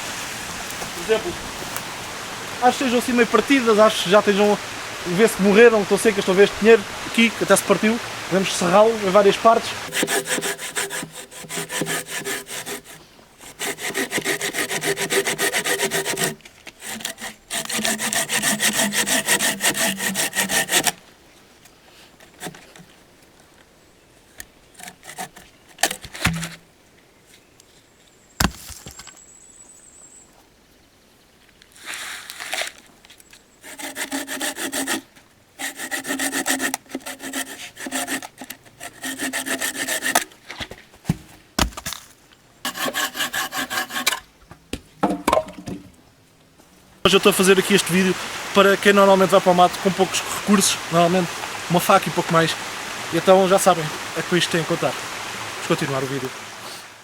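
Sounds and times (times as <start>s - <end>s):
hand saw cutting wood: 9.8s - 21.0s, 22.2s - 22.9s, 24.7s - 26.6s, 33.6s - 40.4s, 42.7s - 44.2s.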